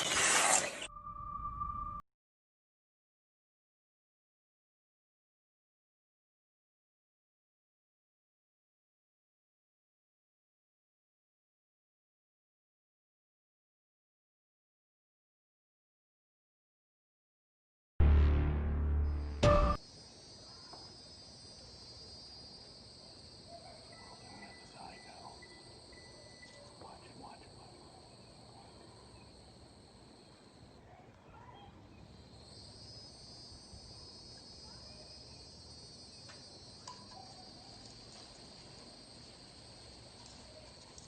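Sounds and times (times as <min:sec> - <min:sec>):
insects trilling: 0:19.8 - 0:30.8, 0:31.9 - 0:41.0.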